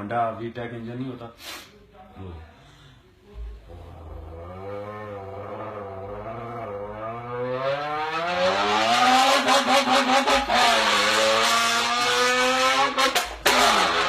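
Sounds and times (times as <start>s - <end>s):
man imitating car engine: 4.2s - 11.8s
sharp cracks: 13.0s - 14.0s.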